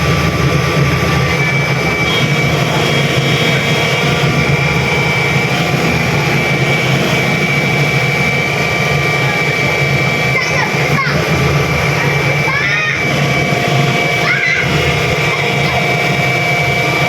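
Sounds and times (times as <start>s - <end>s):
diesel engine rumbling: 0.0s - 17.0s
high whine: 0.0s - 17.0s.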